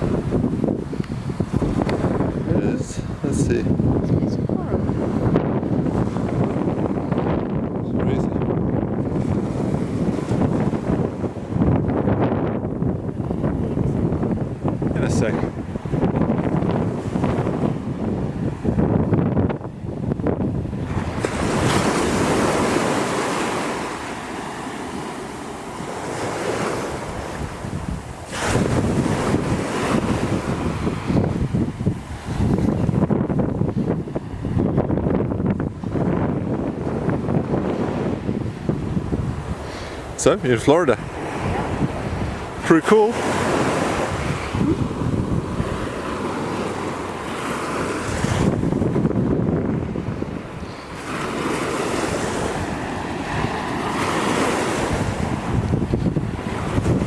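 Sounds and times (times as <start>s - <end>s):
small waves breaking on sand: 0.0s - 57.0s
surf washing on a beach: 0.0s - 57.0s
wind on microphone: 0.0s - 57.0s.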